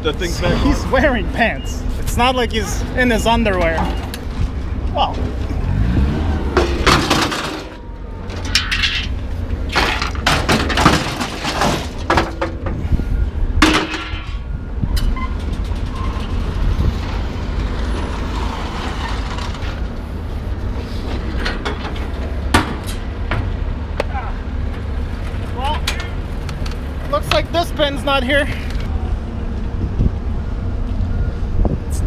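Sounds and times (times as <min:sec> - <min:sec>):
scrap metal clanking and crashing: 0:06.4 - 0:12.8, 0:13.6 - 0:16.7.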